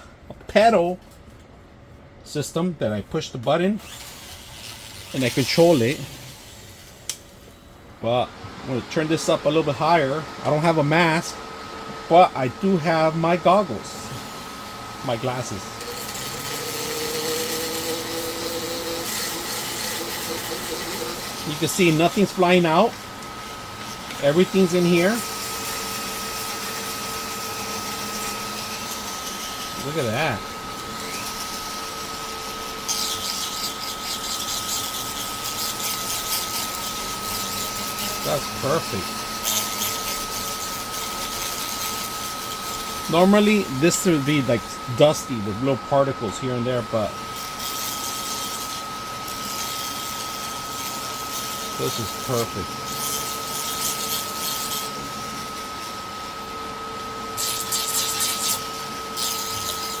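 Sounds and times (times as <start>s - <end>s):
electric fan humming: 0.0s - 60.0s
sanding plastic part: 15.1s - 22.9s, 23.5s - 45.2s, 47.3s - 56.0s, 57.4s - 60.0s
sanding scratchy hiss: 16.5s - 22.9s, 24.2s - 25.3s.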